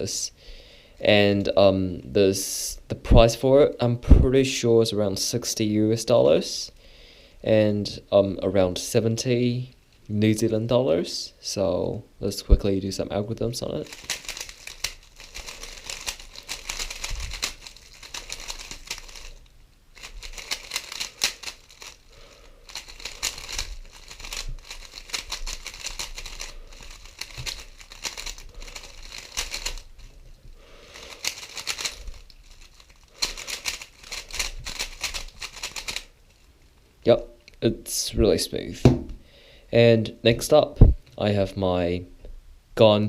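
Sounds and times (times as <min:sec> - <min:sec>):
puzzle cube plastic clicking: 0:13.9 - 0:22.0, 0:22.7 - 0:30.0, 0:31.0 - 0:36.1.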